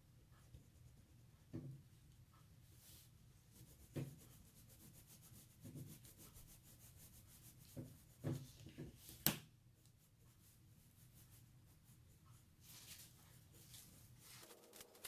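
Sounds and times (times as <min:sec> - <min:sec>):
pencil shading on paper: 0:02.9 - 0:08.7.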